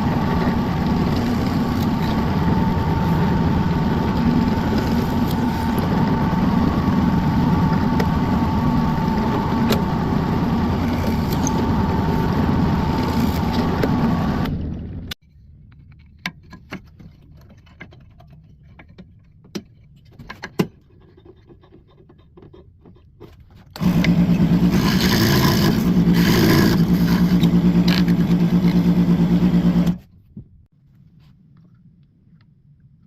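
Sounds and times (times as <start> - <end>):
power drill running: 0.0 - 14.5, 23.8 - 30.0.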